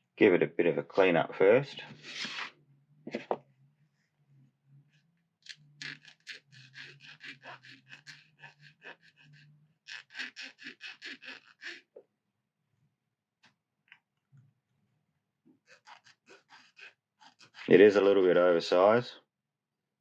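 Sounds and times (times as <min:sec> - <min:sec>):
faint rasping sanding strokes: 0:05.8 - 0:11.8.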